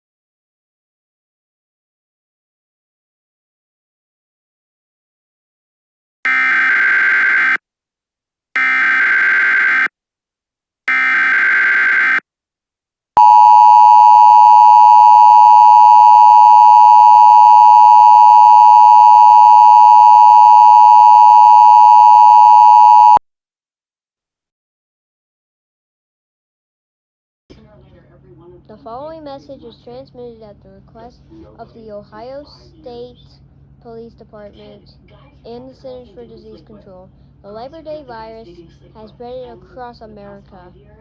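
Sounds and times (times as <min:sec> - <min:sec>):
two-tone attention signal: 0:13.2 - 0:23.2.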